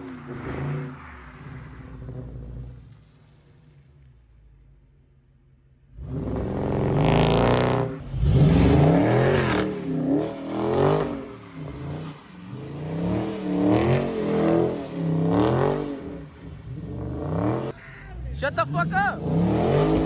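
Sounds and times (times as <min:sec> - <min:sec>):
car engine revving hard: 0:05.9 - 0:17.8, 0:18.4 - 0:20.0.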